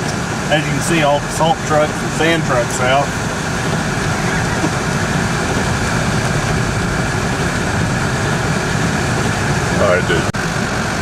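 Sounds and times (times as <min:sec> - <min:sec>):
car engine and tyre rumble: 0:00.0 - 0:11.0.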